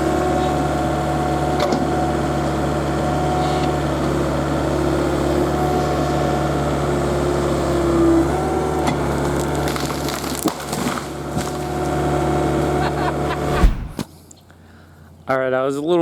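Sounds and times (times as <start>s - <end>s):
excavator diesel engine running: 0.0s - 14.0s
wood and roots cracking: 8.4s - 12.3s.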